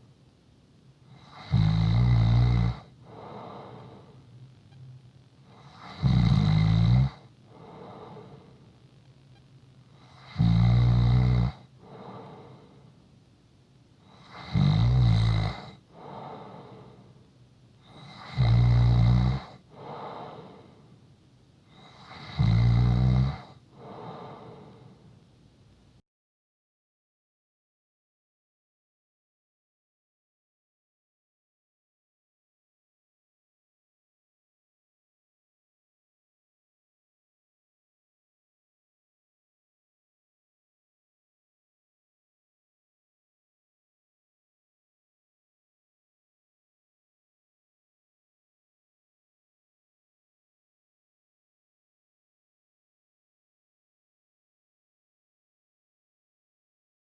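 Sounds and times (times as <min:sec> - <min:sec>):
person snoring: 0:01.1 - 0:04.2, 0:05.5 - 0:08.6, 0:10.0 - 0:12.8, 0:14.1 - 0:17.0, 0:17.9 - 0:20.8, 0:21.7 - 0:25.0.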